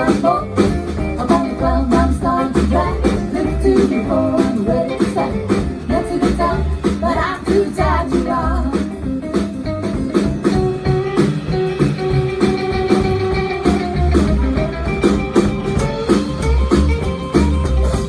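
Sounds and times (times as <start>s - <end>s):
electric guitar: 0.0s - 18.0s
rock and roll band playing: 0.0s - 18.0s.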